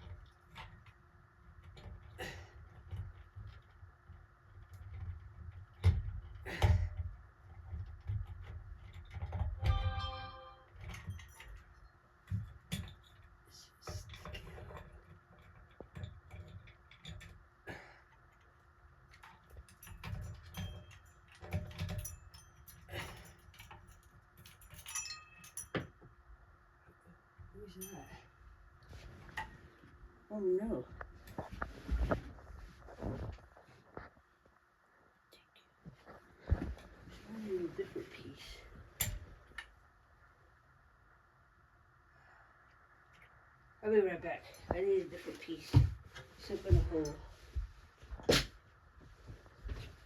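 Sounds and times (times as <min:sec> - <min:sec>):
hands and tools clicking on wiring: 0:00.0 - 0:09.8, 0:10.7 - 0:26.2.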